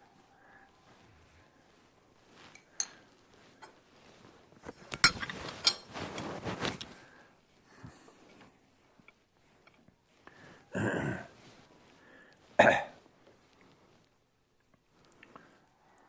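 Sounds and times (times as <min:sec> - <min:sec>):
metal tools clinking: 0:04.8 - 0:06.4
metal scraping and rattling: 0:04.8 - 0:06.8.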